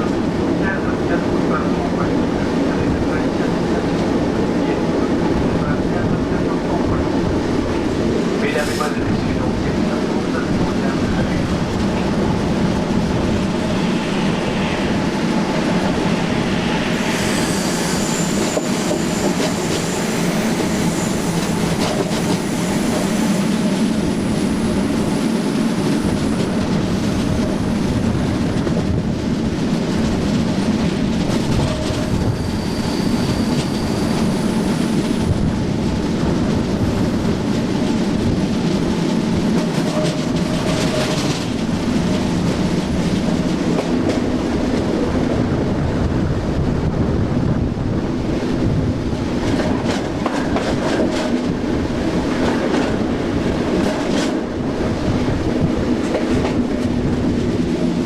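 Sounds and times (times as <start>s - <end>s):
train running at speed: 0.0s - 58.0s
high wheel squeals: 16.0s - 23.5s, 31.8s - 35.2s.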